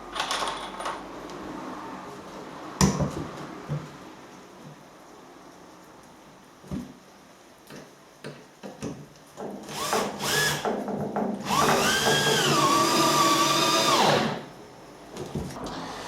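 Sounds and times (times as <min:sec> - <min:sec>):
cordless drill driving screws: 0:09.7 - 0:10.6, 0:11.4 - 0:14.4.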